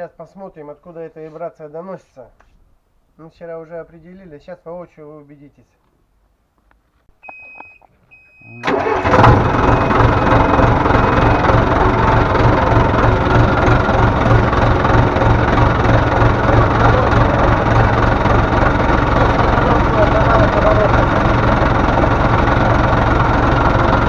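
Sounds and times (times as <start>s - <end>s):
warning beep: 7.2s - 8.7s
tractor engine starting and idling: 7.2s - 24.0s.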